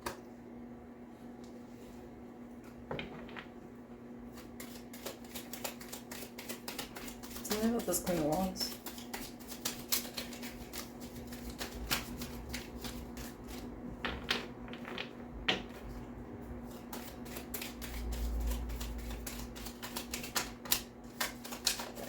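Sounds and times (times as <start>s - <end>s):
cards being shuffled: 4.3s - 13.7s, 16.7s - 22.0s.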